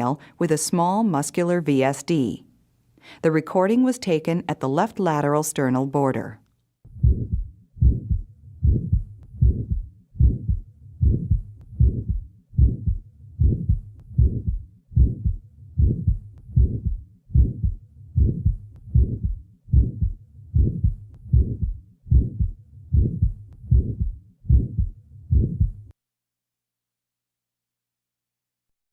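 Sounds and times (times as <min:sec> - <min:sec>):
systolic heart murmur: 0:06.9 - 0:25.9
regular heartbeat: 0:06.9 - 0:26.0.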